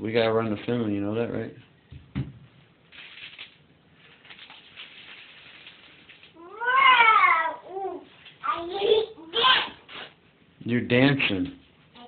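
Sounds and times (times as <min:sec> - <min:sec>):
dry cat food rustling: 0:02.9 - 0:06.5
cat meowing: 0:06.4 - 0:07.7.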